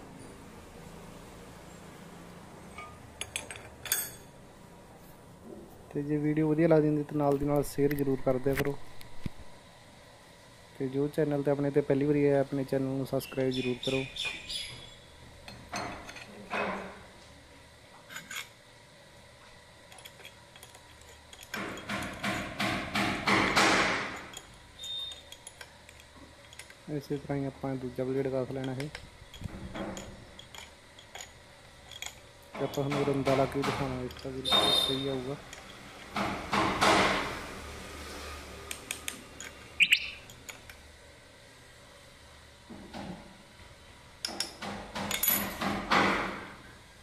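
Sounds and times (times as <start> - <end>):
low workshop background: 0.0 - 47.0
small bird chirping: 13.3 - 15.0, 39.7 - 40.3.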